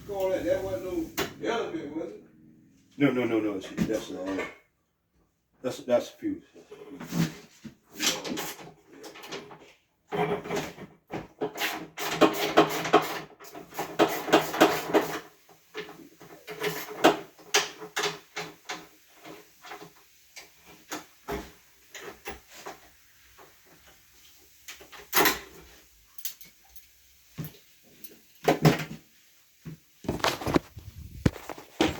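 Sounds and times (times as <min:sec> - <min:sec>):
parts and tools clattering: 0:30.0 - 0:31.9.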